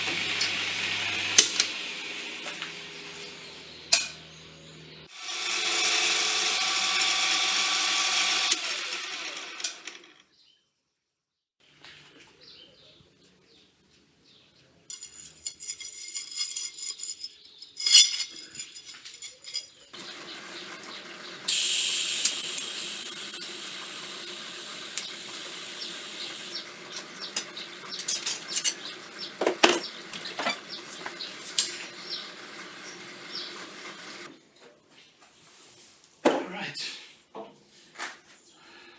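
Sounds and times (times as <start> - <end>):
power tool running: 0.0 - 3.9, 5.1 - 10.2, 20.0 - 34.3
metal parts rattling and clinking: 14.9 - 20.0, 27.3 - 28.9
loud high hiss: 21.5 - 26.6.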